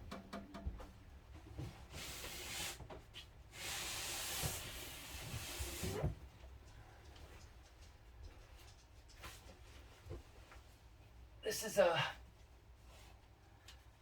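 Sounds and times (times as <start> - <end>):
hissing rubbing or sliding: 1.9 - 2.9, 3.5 - 6.1.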